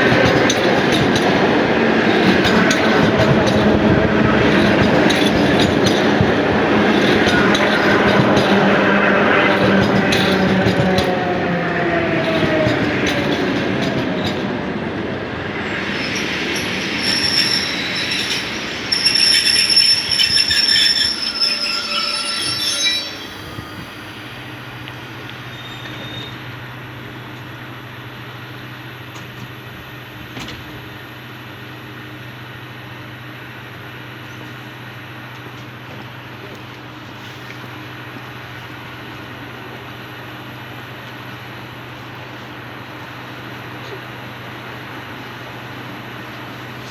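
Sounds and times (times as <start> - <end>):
train motor whine: 0.0 - 31.0
standing train humming: 0.0 - 46.9
train brake squeal: 15.6 - 24.6, 25.4 - 26.5.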